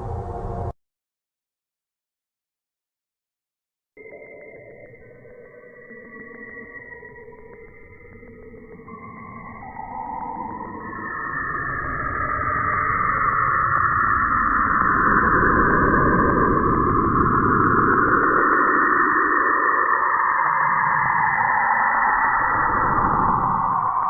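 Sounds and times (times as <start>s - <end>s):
deep rumble: 0.0s - 0.8s.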